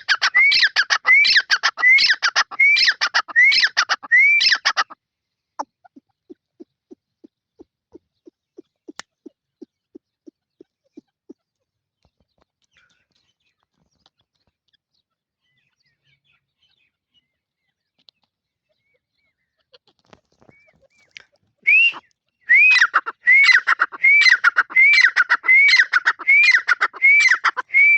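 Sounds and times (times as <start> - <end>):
francolin whistled calls: 0.1 - 4.8, 21.7 - 27.9.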